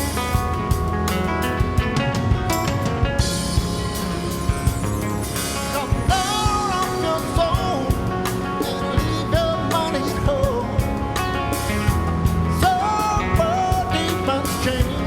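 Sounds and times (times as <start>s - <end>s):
rock band with drum beat: 0.0s - 15.0s
person singing: 5.8s - 11.2s, 12.5s - 15.0s.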